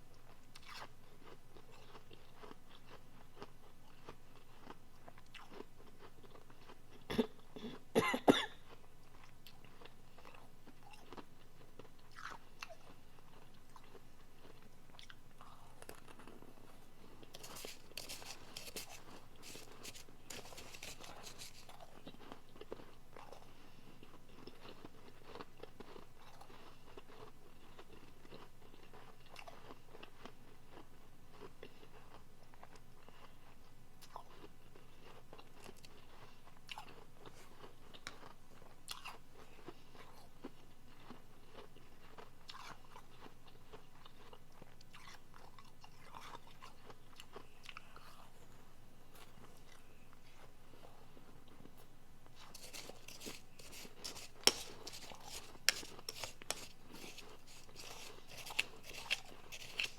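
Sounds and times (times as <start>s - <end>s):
crunching and chewing ice: 0.2s - 59.9s.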